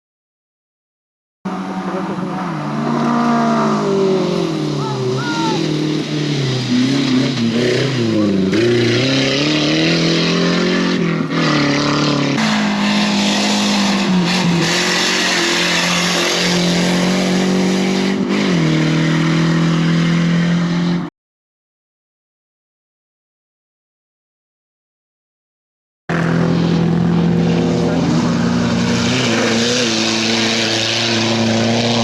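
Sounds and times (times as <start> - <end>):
race vehicle engines revving: 1.5 - 21.1, 26.1 - 32.0.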